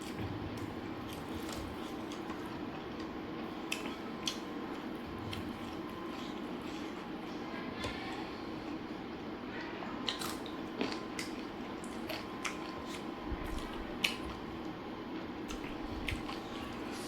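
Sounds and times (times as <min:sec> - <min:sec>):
steady low hum: 0:00.0 - 0:17.0
wet chewing and mouth smacks: 0:03.7 - 0:07.1, 0:10.0 - 0:14.8, 0:15.4 - 0:17.0.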